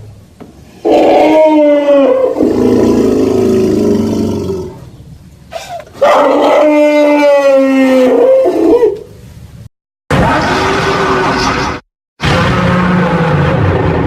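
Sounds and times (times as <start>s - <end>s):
dinosaur roars: 0.8s - 4.9s.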